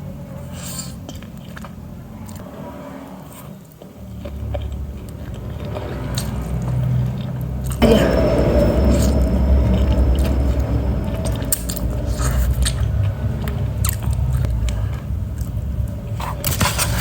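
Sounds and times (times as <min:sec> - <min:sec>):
person chewing noodles: 0:03.8 - 0:07.8.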